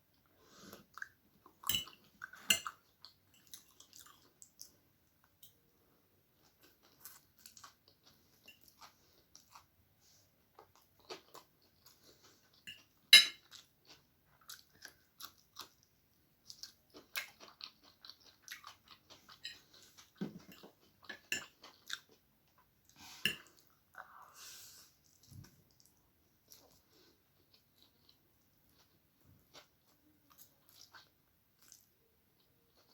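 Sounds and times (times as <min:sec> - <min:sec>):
chewing and crunching noodles: 0:00.2 - 0:32.9.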